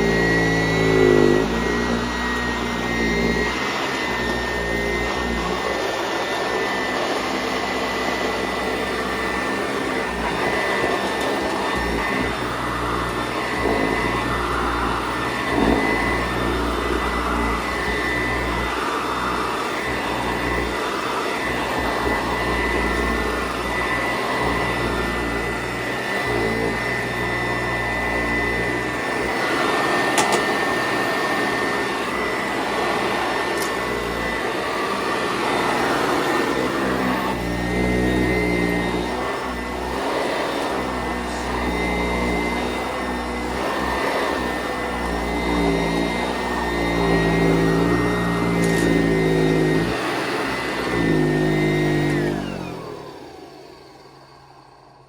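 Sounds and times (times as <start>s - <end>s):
vacuum cleaner whining: 0.0s - 55.0s.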